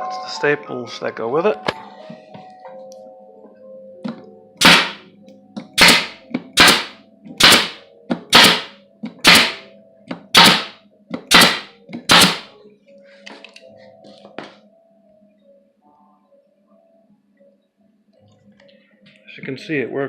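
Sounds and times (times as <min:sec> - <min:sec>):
staple gun firing: 0:04.6 - 0:05.0, 0:05.8 - 0:09.6, 0:10.4 - 0:12.5.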